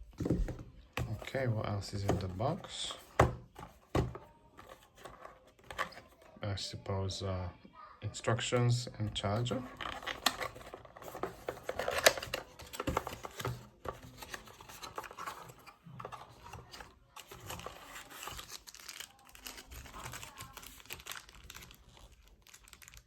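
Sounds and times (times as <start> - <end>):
packaging crinkling and rustling: 9.2 - 23.0.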